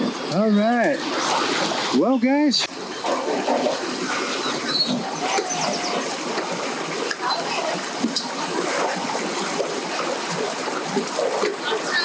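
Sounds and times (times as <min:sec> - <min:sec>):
distant voices: 0:00.0 - 0:08.1
water washing: 0:00.0 - 0:12.0.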